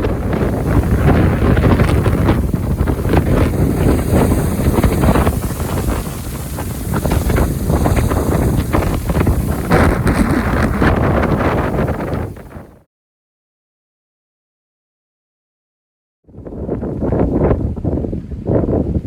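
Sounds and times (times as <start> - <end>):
strong wind buffeting microphone: 0.0 - 12.8, 16.3 - 19.0.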